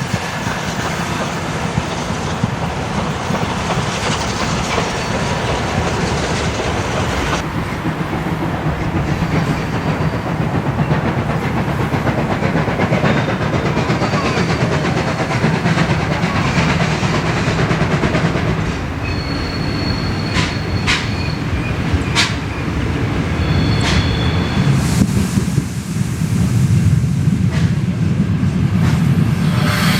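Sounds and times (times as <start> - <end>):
train rumbling on track: 0.0 - 29.9.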